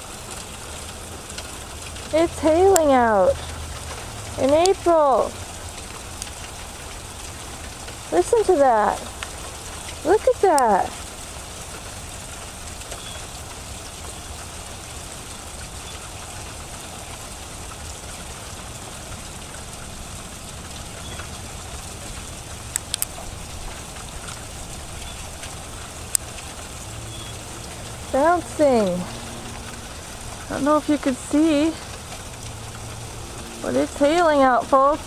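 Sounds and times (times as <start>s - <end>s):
hailstones falling: 0.0s - 35.0s
sharp ticks: 22.7s - 23.2s.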